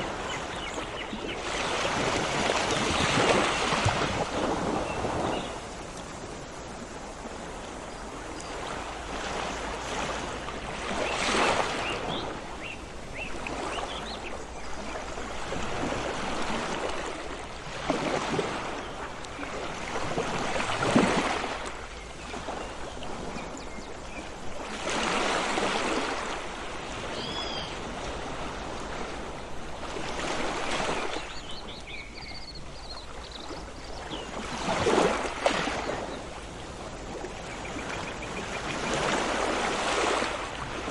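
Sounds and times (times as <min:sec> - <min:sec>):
sea waves washing onto shore: 0:00.0 - 0:40.9
faint bird chirps: 0:27.1 - 0:27.8.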